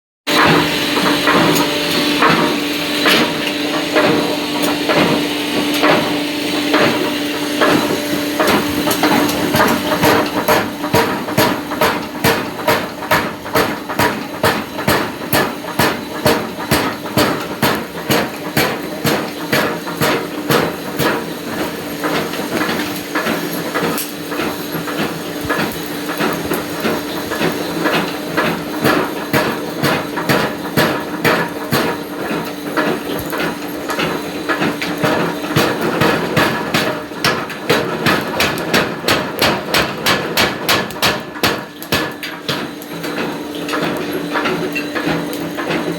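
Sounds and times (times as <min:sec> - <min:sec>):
hammer striking metal: 0:00.3 - 0:21.2, 0:35.0 - 0:43.9
machine hum: 0:00.3 - 0:45.9.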